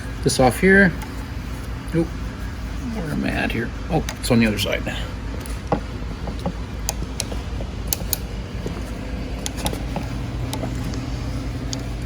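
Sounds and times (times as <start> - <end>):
steady low hum: 0.0 - 12.0
sharp metallic clicks and taps: 5.4 - 8.8.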